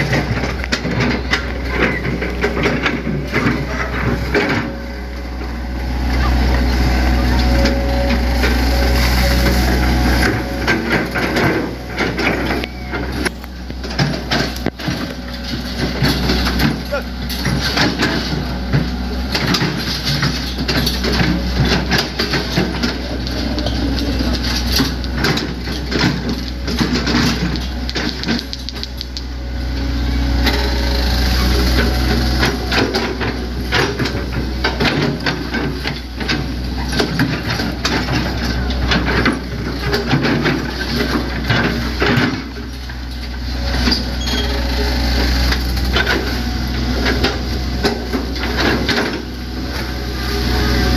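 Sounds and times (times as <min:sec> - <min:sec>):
excavator diesel engine running: 0:00.0 - 0:50.9
sharp knocks and clatter: 0:13.2 - 0:29.2.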